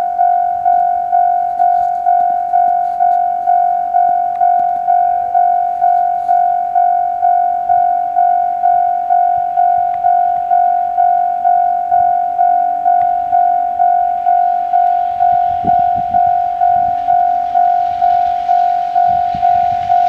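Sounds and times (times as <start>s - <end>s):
level crossing warning bell: 0.0s - 20.0s.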